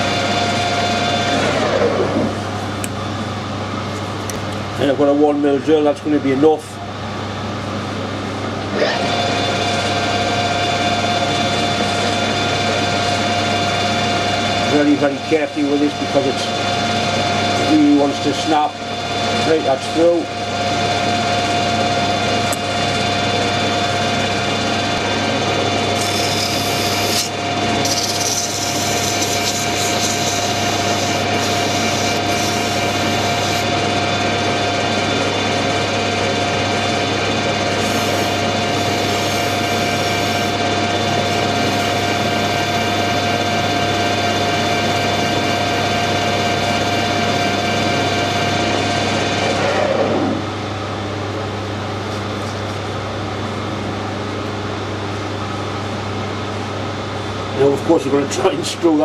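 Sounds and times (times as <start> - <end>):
metal lathe whining: 24.7 - 35.2, 37.0 - 49.7
cutting tool hissing: 25.9 - 33.7, 37.8 - 43.2.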